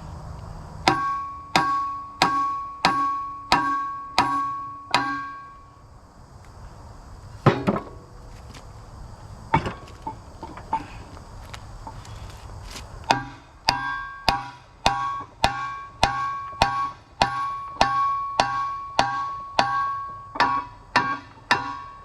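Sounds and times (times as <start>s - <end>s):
hammer striking steel: 0.8s - 5.7s, 13.1s - 22.0s.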